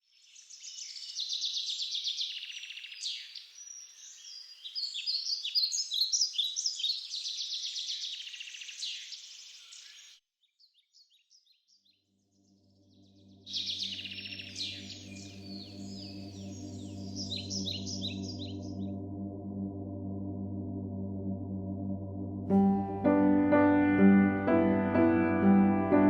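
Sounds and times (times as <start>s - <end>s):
songbirds singing: 0.0s - 19.1s.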